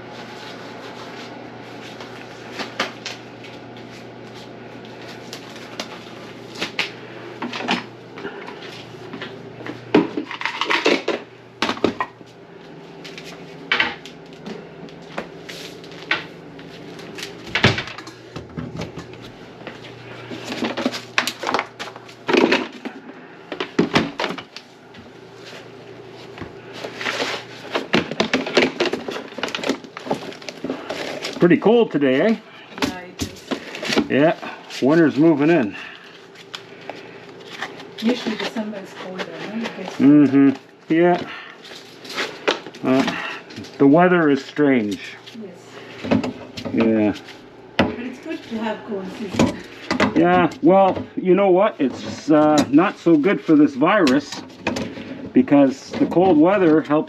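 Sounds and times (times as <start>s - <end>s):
steady low hum: 0.0s - 57.0s
objects being set down: 7.4s - 12.1s, 20.3s - 24.6s, 26.8s - 31.4s.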